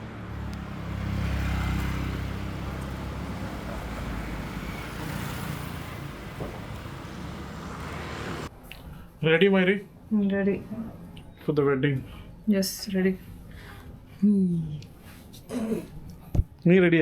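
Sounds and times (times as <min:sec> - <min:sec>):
passing traffic rumble: 0:00.0 - 0:08.5.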